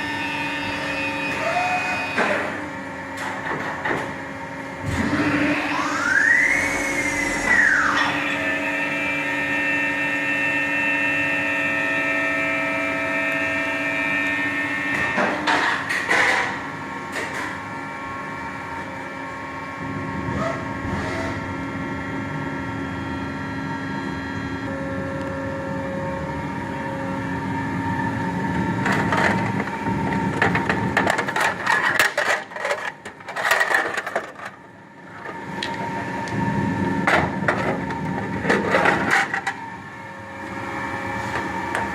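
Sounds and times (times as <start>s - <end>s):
lathe whine: 4.9s - 15.3s.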